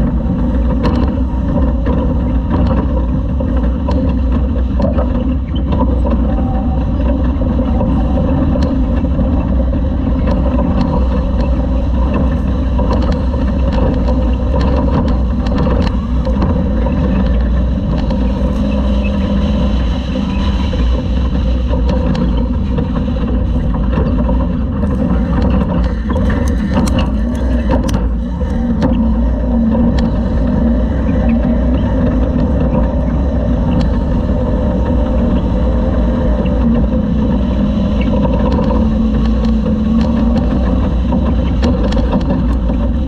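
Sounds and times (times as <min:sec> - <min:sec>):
sharp clicks and rattles: 0:00.0 - 0:43.0
truck engine and drivetrain rumble: 0:00.0 - 0:43.0
wind: 0:00.0 - 0:43.0.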